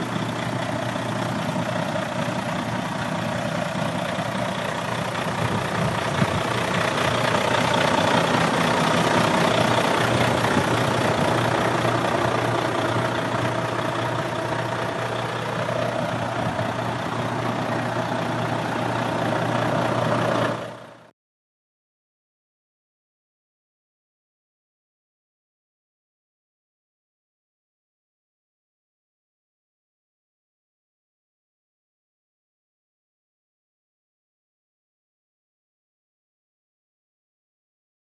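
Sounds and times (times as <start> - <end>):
diesel engine idling: 0.0 - 21.1.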